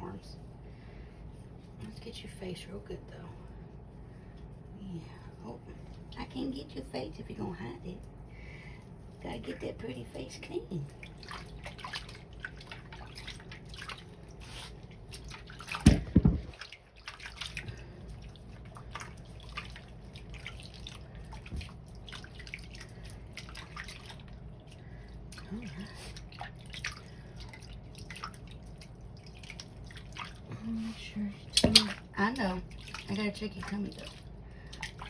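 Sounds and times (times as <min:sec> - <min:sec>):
water dripping and splashing: 0:10.8 - 0:30.5, 0:31.4 - 0:35.0
loud thump: 0:15.8 - 0:16.5.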